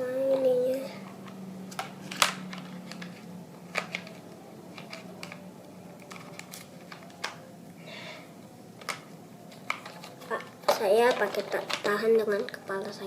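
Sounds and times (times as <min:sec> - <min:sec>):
plastic parts clicking together: 0:01.7 - 0:07.4, 0:08.8 - 0:12.0.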